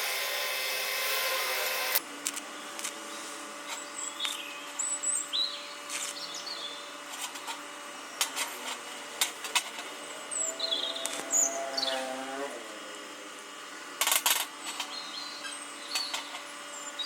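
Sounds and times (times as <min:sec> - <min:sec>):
small birds chirping: 0:02.5 - 0:06.9, 0:10.1 - 0:12.0, 0:14.6 - 0:17.0.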